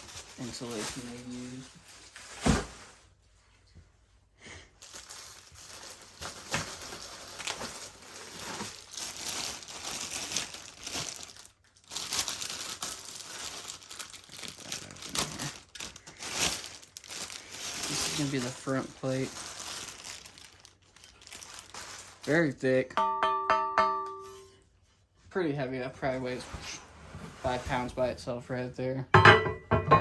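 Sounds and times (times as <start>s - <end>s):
foam packing crinkling and tearing: 0.0s - 3.2s, 4.8s - 22.8s.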